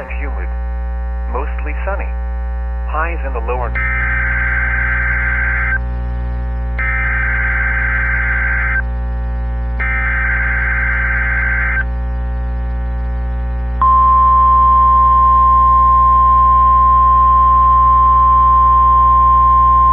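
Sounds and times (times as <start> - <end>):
warning alarm tone: 0.0 - 0.5, 6.8 - 8.9, 9.7 - 12.2
low electrical hum: 0.0 - 19.9.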